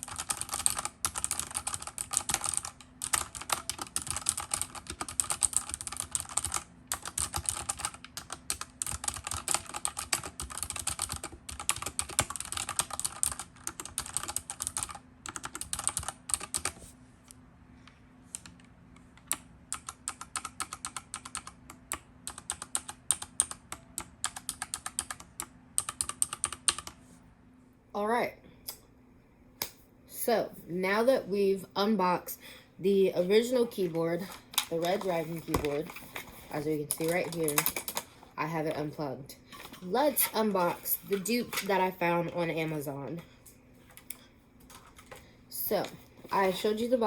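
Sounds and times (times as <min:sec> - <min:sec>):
mechanical keyboard typing: 0:00.0 - 0:16.8, 0:19.2 - 0:27.0, 0:33.4 - 0:38.8, 0:39.5 - 0:42.8.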